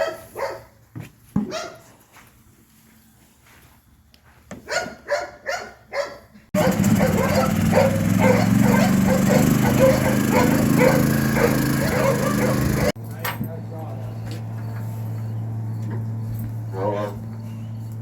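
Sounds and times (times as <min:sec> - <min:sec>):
dog barking: 0:00.0 - 0:00.8, 0:01.4 - 0:01.8, 0:04.6 - 0:13.0, 0:16.7 - 0:17.3
loud machine hum: 0:06.6 - 0:13.0.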